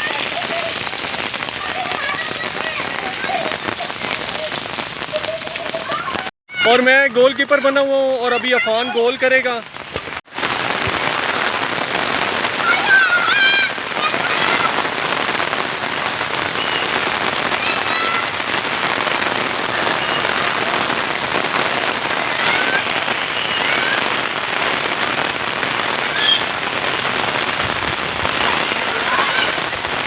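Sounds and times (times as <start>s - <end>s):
children calling out: 0.0s - 9.2s, 12.4s - 15.3s, 16.8s - 18.7s, 22.0s - 24.2s, 28.3s - 30.0s
heavy rain falling: 0.0s - 30.0s.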